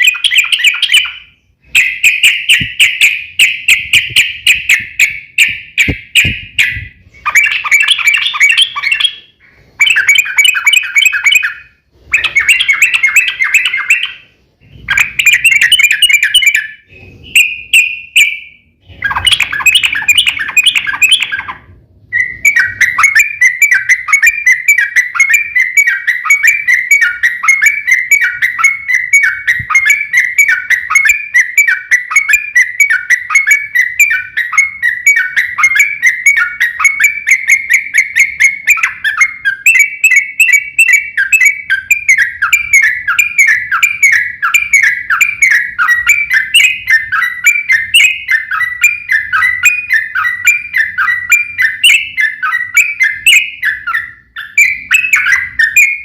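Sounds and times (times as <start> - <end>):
bird chattering rapid notes: 0.0 - 9.2, 18.9 - 21.6.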